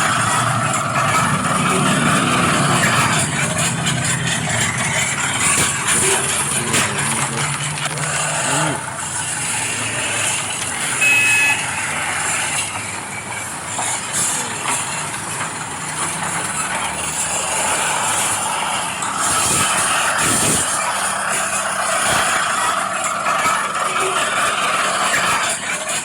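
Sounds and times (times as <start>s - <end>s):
low engine-like hum: 0.0s - 20.0s
model machines running and scraping: 0.0s - 26.0s
short high beep: 11.0s - 11.6s.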